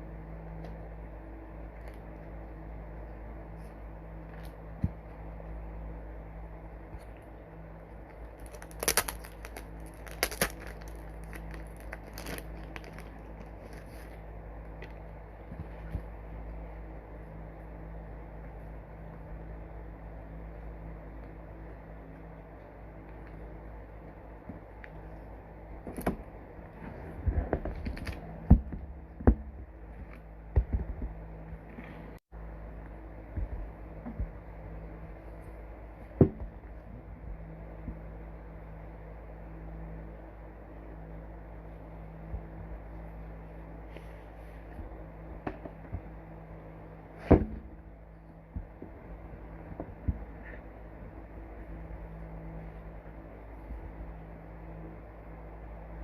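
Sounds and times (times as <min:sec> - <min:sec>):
steady low hum: 0:00.0 - 0:56.0
packaging crinkling: 0:08.4 - 0:14.2.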